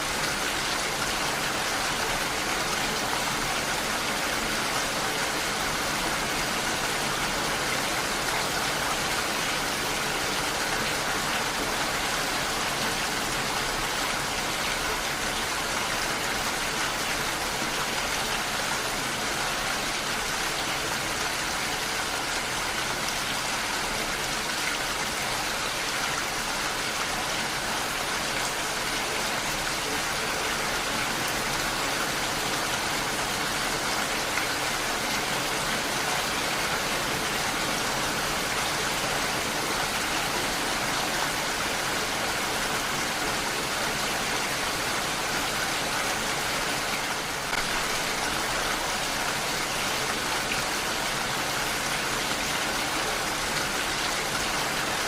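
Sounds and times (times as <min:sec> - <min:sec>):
heavy rain: 0:00.0 - 0:55.0.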